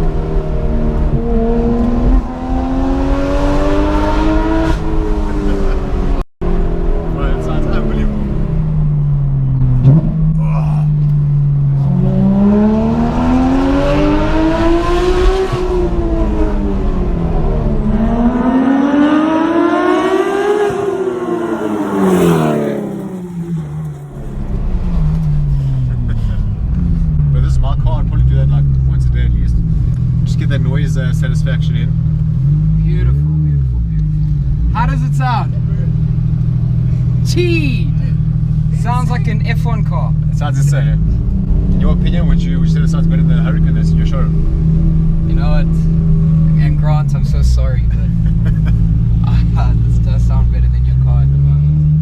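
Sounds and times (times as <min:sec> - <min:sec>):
sports car engine accelerating hard: 0:00.0 - 0:52.0.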